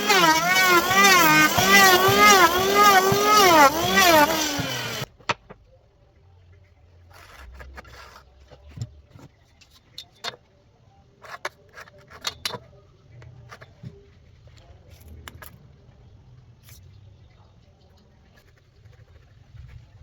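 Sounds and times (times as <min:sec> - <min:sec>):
power tool motor whining: 0:00.0 - 0:05.1.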